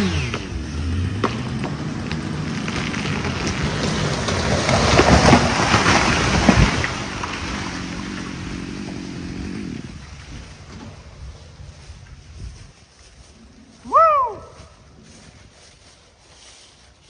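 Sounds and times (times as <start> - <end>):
tree falling through branches: 0.0 - 17.0
chainsaw idling: 7.5 - 10.0.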